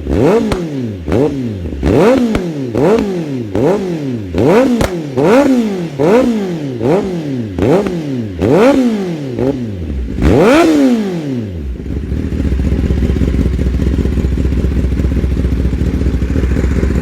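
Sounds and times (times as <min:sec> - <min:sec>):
motorcycle engine revving and idling: 0:00.0 - 0:17.0.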